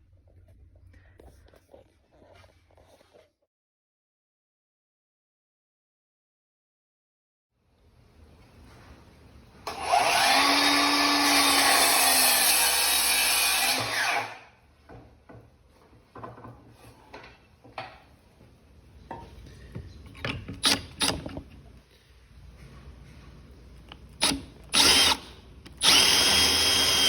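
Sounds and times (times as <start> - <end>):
power tool cutting wood: 9.7 - 14.4, 24.2 - 27.0
knocks and clicks of handling wood: 14.8 - 18.1, 19.1 - 21.7.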